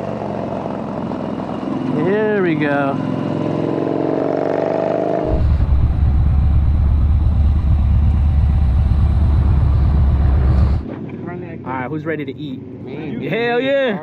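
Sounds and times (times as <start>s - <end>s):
motorcycle engine running: 5.2s - 10.8s.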